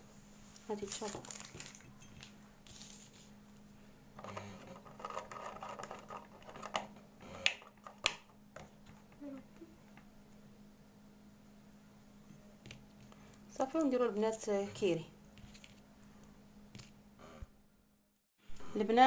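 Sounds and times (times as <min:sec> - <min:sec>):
foil and packaging rustling: 0:00.5 - 0:02.1.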